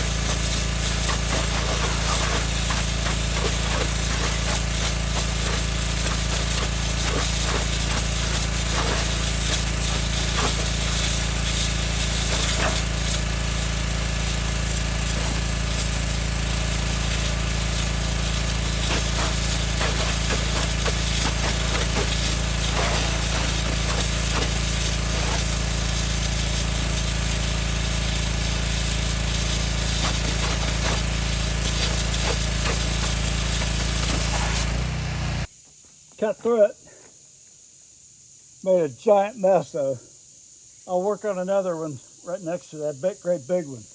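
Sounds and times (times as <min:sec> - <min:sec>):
high-pressure water jet blasting soil: 0:00.0 - 0:35.5
pressure washer engine running: 0:00.0 - 0:35.5.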